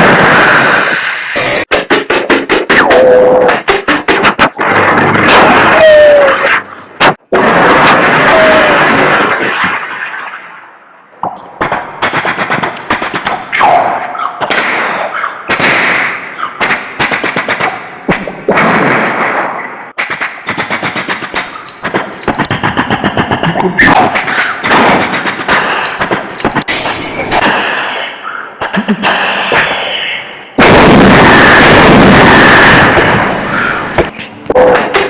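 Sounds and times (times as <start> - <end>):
mouth imitating machine-gun fire: 0.0 - 9.5, 11.6 - 27.9, 30.6 - 35.0
mouth imitating blast: 2.7 - 3.7.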